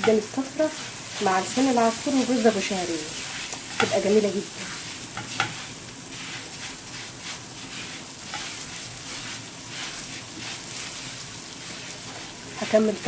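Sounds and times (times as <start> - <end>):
pasta sizzling in a pan: 0.0 - 13.0
spoon scraping a pan: 0.7 - 13.0.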